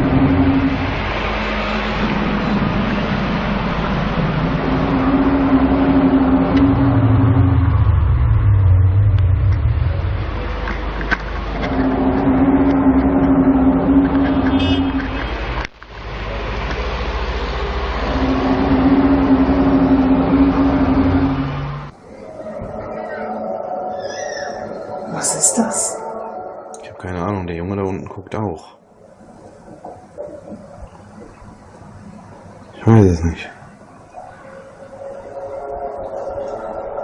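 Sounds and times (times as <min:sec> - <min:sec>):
deep low rumble: 0:00.0 - 0:23.8
drawn-out droning hum: 0:00.0 - 0:27.6, 0:28.8 - 0:37.0
noisy background: 0:00.0 - 0:37.0.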